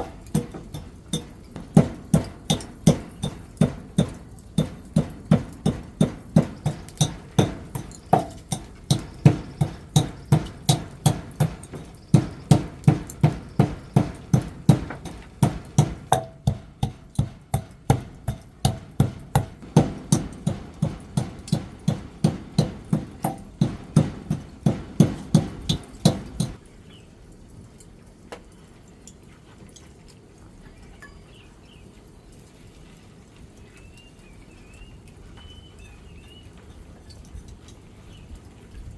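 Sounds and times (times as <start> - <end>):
sharp knocks: 0.0 - 26.6
faint bird chirps: 30.7 - 31.8, 33.6 - 36.6.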